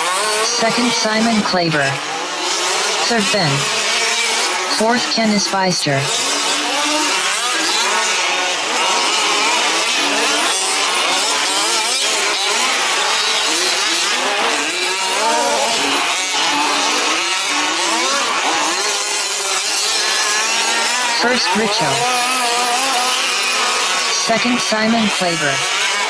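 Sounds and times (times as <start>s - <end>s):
small two-stroke engines revving: 0.0s - 26.0s.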